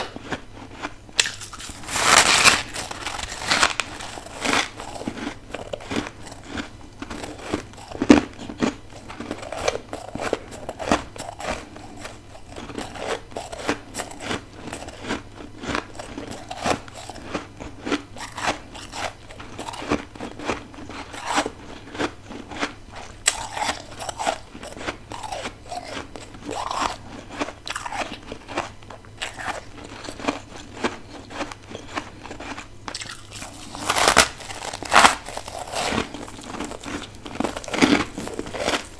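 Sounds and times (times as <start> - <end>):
person crunching ice: 1.2 - 15.0, 29.2 - 38.9.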